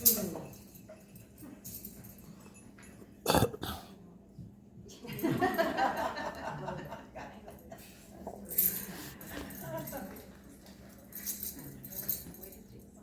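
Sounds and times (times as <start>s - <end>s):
person coughing: 3.3s - 3.9s.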